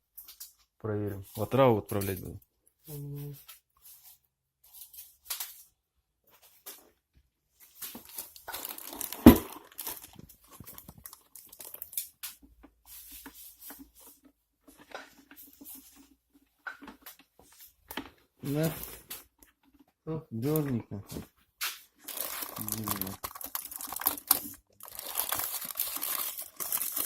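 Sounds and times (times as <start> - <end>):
packaging rustling and crinkling: 7.6 - 19.8, 20.5 - 27.0.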